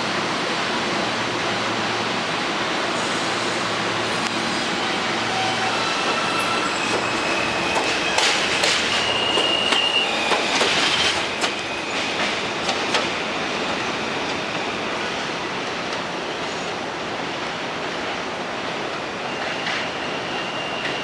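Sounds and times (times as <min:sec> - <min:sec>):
subway train rumbling: 0:00.0 - 0:21.0
wheels squealing: 0:04.8 - 0:12.3.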